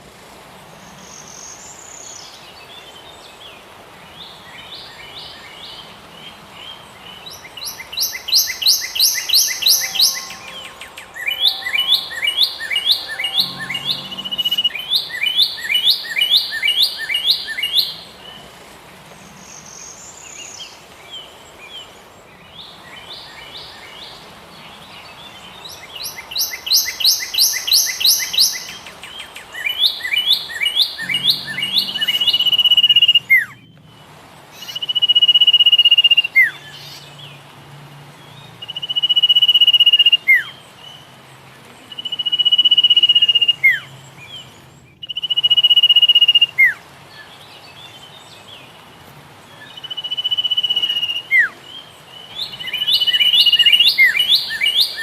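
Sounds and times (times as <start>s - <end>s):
songbirds chirping: 0.0s - 55.0s
bird whistled note: 8.2s - 16.7s, 31.0s - 33.6s.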